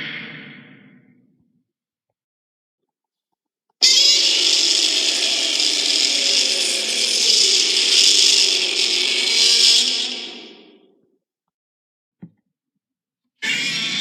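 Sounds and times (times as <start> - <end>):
loud harsh monster roar: 3.9 - 10.8.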